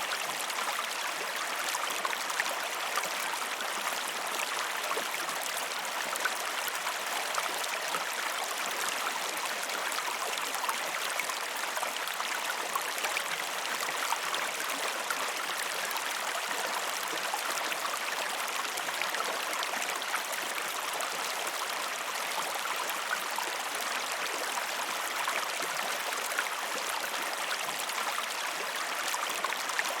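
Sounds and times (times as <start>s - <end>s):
small stream running: 0.0s - 30.0s.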